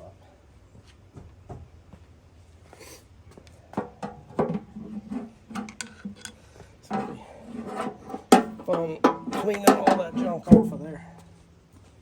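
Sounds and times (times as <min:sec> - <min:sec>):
tools and parts clattering: 0:03.8 - 0:11.2.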